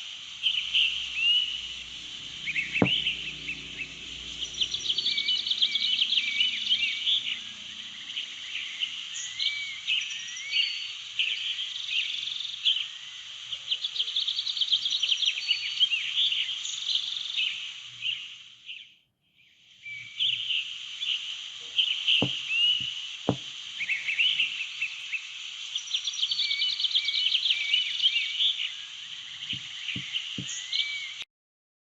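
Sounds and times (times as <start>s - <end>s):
steady hiss: 0.0s - 18.8s, 19.6s - 31.2s
small birds chirping: 0.0s - 31.2s
soft low knocks: 2.8s - 3.2s, 22.2s - 22.4s, 23.3s - 23.5s.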